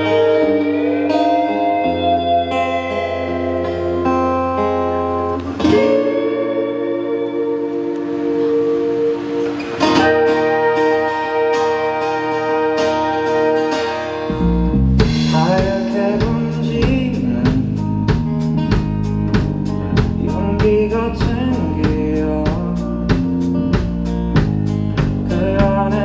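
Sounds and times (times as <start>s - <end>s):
guitar chord ringing: 0.0s - 20.5s
person singing: 5.6s - 8.8s, 15.2s - 18.2s, 20.1s - 23.4s, 25.2s - 26.0s
bass and drums beat: 14.2s - 26.0s.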